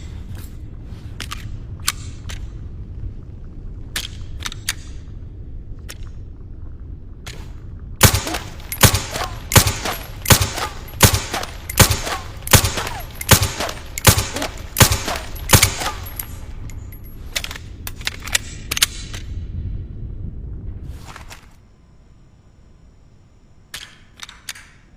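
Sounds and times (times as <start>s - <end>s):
silenced pistol shots: 8.0s - 16.4s.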